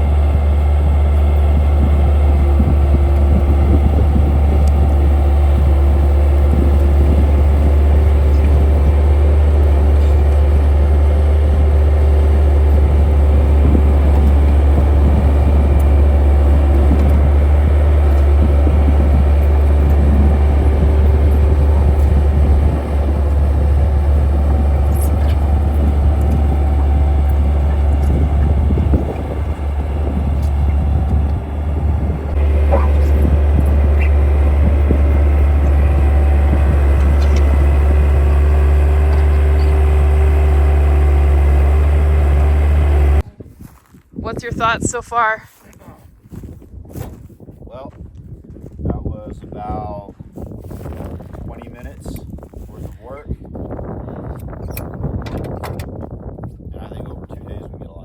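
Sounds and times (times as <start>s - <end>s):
skid steer engine droning: 0.0s - 43.4s.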